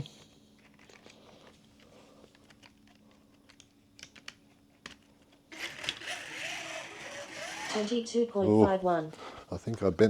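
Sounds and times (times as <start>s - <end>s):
faint steady hum: 0.0s - 10.0s
faint clicks and taps from handling: 9.7s - 9.9s.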